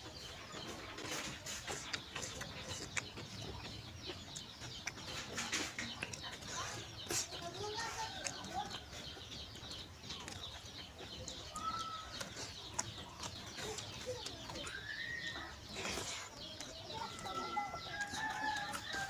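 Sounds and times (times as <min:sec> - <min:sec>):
birds chirping and calling: 0:00.0 - 0:19.0.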